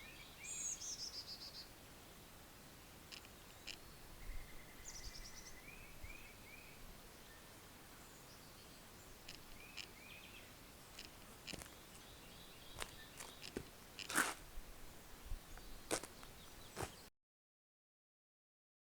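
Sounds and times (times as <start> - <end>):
faint bird chirps: 0.0 - 13.6
sharp clicks and knocks: 12.8 - 14.2.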